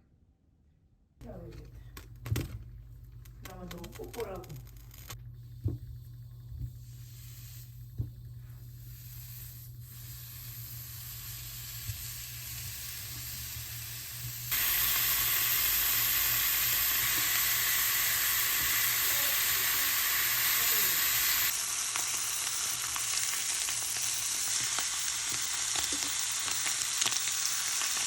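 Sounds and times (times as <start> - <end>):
food sizzling in a pan: 8.4 - 28.0.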